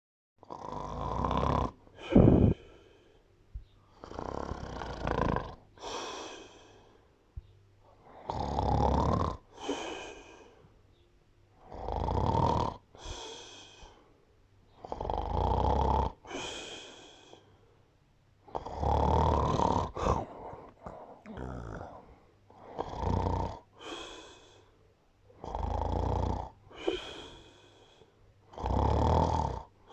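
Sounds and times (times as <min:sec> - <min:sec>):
person snoring: 0:00.4 - 0:03.2, 0:03.9 - 0:07.0, 0:08.0 - 0:10.6, 0:11.6 - 0:14.1, 0:14.8 - 0:17.5, 0:18.4 - 0:24.7, 0:25.4 - 0:29.9.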